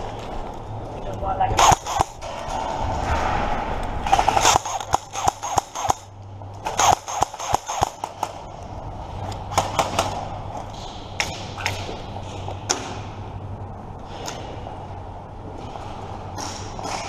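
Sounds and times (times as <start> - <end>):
airsoft gun shots: 1.6 - 2.2, 4.0 - 8.3.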